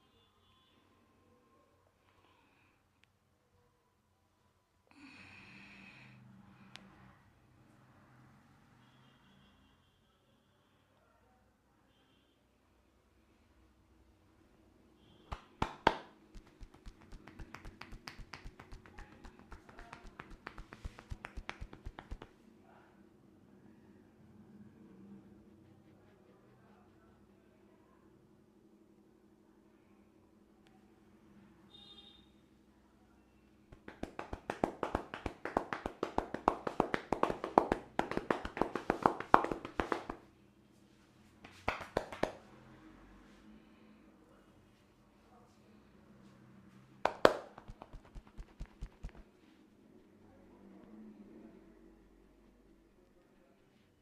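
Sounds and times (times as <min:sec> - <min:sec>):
hands slapping on a head: 0:15.3 - 0:22.4, 0:33.7 - 0:40.3, 0:41.4 - 0:42.4, 0:47.0 - 0:49.3
hands tapping on a head: 0:15.3 - 0:22.4, 0:33.7 - 0:40.2, 0:41.4 - 0:42.4, 0:47.0 - 0:49.3.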